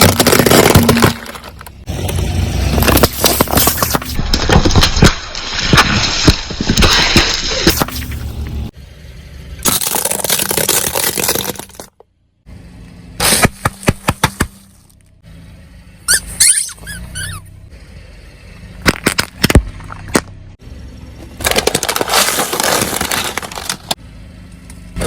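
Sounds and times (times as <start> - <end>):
car tyre crunching objects: 0.0 - 8.8, 9.5 - 12.2, 12.9 - 15.2, 18.2 - 25.0
squeaky warble: 16.1 - 18.6.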